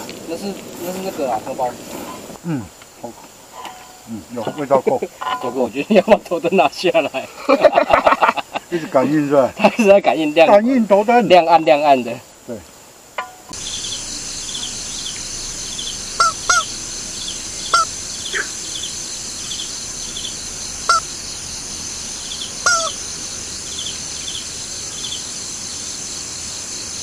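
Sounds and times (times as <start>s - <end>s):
crickets chirping: 0.0s - 27.0s
animal calls rising and falling: 13.8s - 21.5s, 22.2s - 23.0s.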